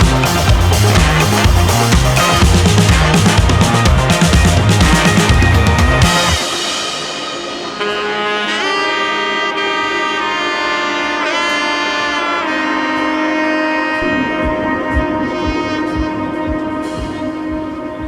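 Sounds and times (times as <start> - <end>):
light beat: 0.0 - 6.8, 14.0 - 18.0
saxophone-like horn: 0.0 - 18.0.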